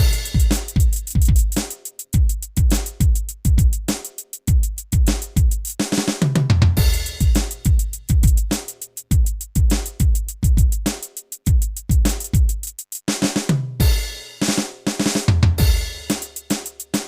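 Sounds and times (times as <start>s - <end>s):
electronic drum rhythm: 0.0s - 17.0s.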